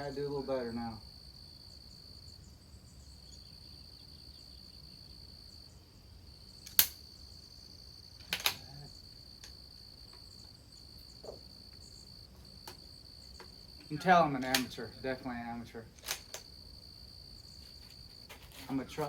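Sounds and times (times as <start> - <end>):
insects chirring: 0.0 - 19.0
rifle bolt clacks: 6.7 - 7.0, 8.2 - 8.6, 16.0 - 16.5.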